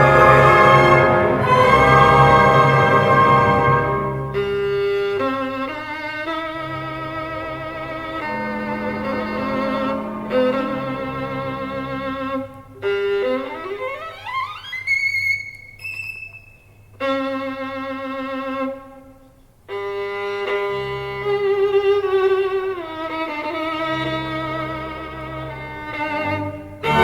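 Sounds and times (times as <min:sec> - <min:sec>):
violin music from a record: 0:00.0 - 0:15.3, 0:19.7 - 0:27.0.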